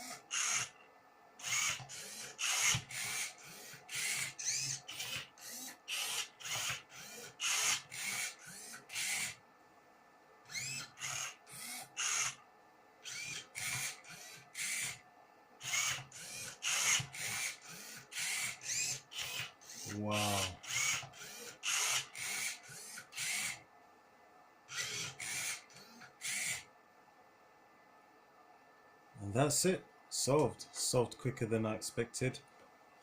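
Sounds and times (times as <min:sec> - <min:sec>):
robot motors whirring: 0:00.0 - 0:00.8, 0:01.4 - 0:09.4, 0:10.5 - 0:12.4, 0:13.0 - 0:15.0, 0:15.6 - 0:23.6, 0:24.7 - 0:26.6.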